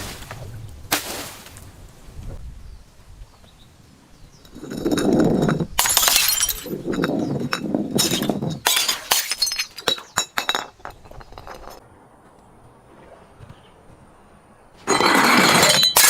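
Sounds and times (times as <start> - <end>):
glass bottle smashing: 5.8 - 10.8, 14.9 - 16.0
glass shards tinkling: 5.8 - 11.8.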